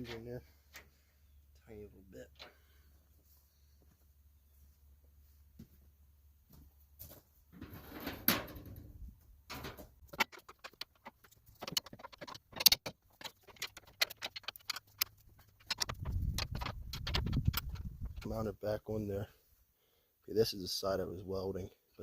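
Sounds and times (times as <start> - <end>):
metal parts clicking and knocking: 9.5 - 18.4.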